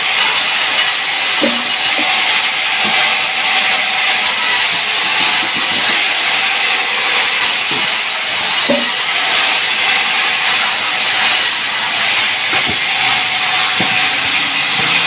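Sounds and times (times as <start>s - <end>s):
sawmill saw cutting logs: 0.0s - 15.0s.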